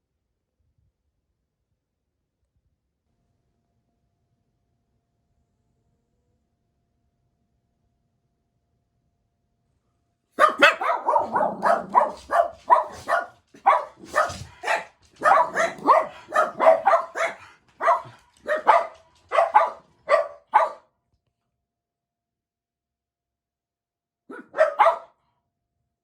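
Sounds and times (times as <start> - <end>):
dogs barking excitedly: 10.4 - 20.8, 24.3 - 25.1.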